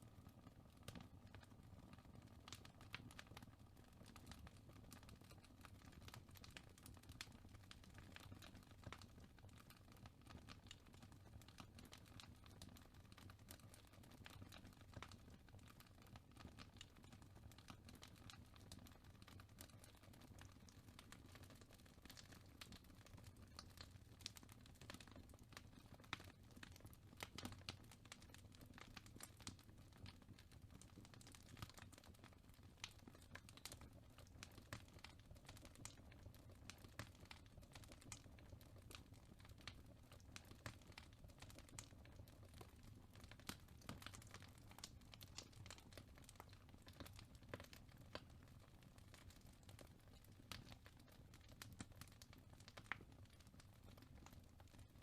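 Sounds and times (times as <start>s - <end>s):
fireplace crackling: 19.3s - 55.0s.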